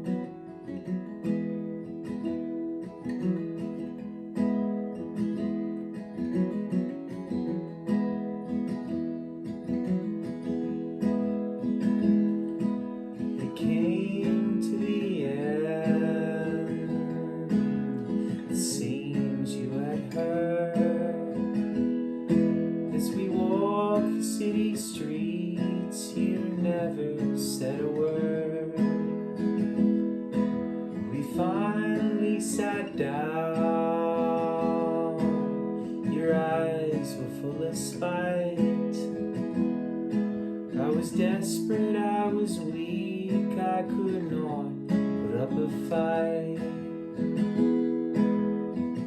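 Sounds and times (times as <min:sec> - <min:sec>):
acoustic guitar strummed: 0:00.0 - 0:49.0
person singing: 0:13.4 - 0:21.7, 0:22.4 - 0:29.4, 0:30.9 - 0:39.4, 0:40.7 - 0:47.3.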